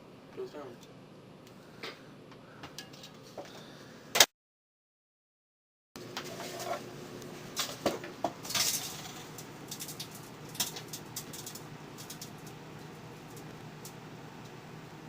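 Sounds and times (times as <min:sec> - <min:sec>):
microwave oven humming: 0:06.0 - 0:15.0.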